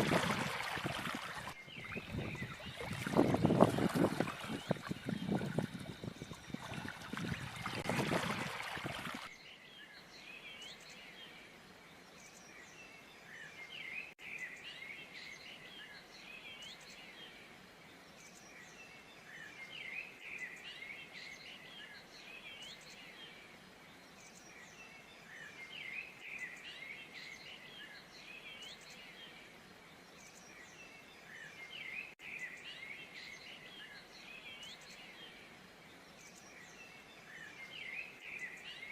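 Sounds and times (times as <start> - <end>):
small birds chirping: 0.0 - 11.3.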